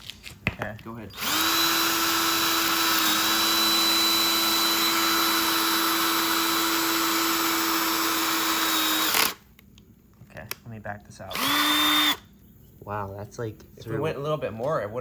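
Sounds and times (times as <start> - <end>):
cordless drill grinding into metal: 1.1 - 9.4, 11.3 - 12.3.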